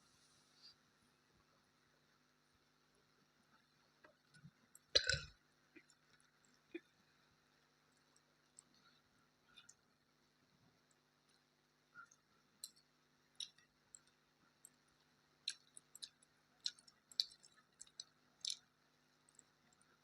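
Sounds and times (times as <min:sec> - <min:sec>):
chewing mouth sounds: 0:15.5 - 0:18.7.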